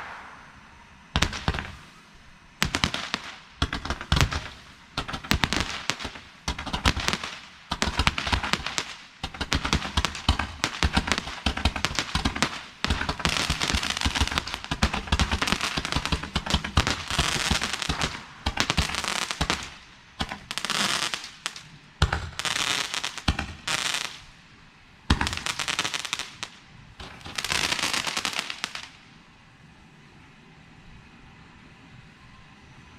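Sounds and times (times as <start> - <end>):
fireworks popping and crackling: 0.0 - 0.6, 1.2 - 2.0, 2.6 - 24.4, 25.1 - 29.1.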